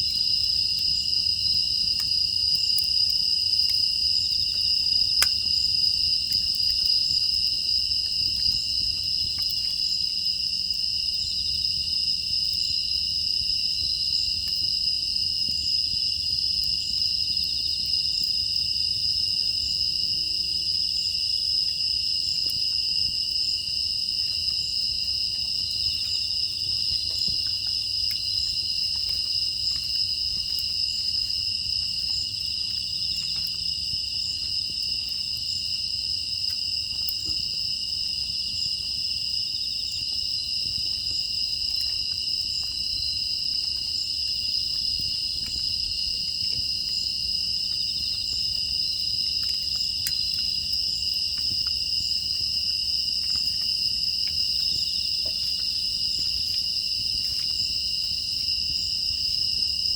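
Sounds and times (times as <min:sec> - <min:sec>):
wood fire crackling: 0:00.0 - 0:19.8, 0:20.8 - 0:59.9
crickets trilling: 0:00.0 - 0:59.9.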